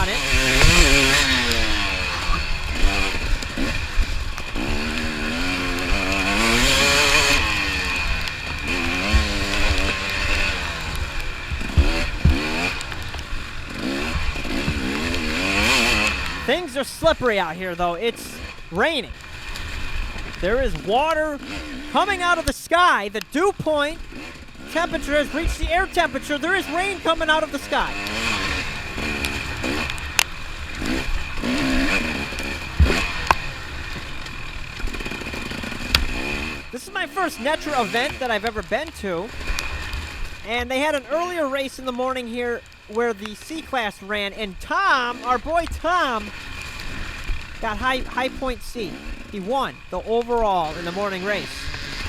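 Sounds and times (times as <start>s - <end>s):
dirt bike engine revving: 0.0s - 52.0s
sharp low thumps: 7.0s - 16.4s.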